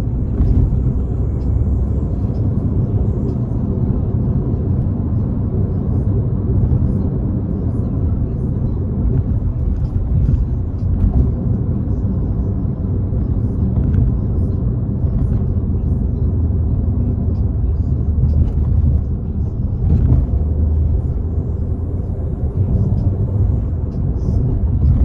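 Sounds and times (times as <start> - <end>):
car engine and road rumble: 0.0 - 25.0.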